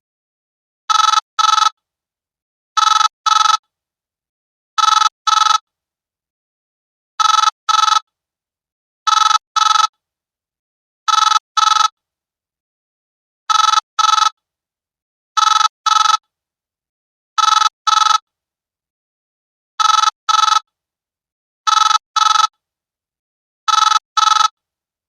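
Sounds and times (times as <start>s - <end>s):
phone ringtone double beeps: 0.9s - 1.8s, 2.8s - 3.6s, 4.8s - 5.6s, 7.2s - 8.1s, 9.1s - 10.0s, 11.1s - 12.0s, 13.5s - 14.4s, 15.4s - 16.2s, 17.4s - 18.3s, 19.8s - 20.7s, 21.7s - 22.6s, 23.7s - 24.6s.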